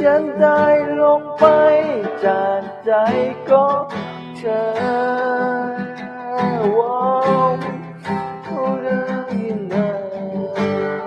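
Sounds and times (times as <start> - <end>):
acoustic guitar strumming: 0.0 - 11.0
held melody line: 0.0 - 11.0.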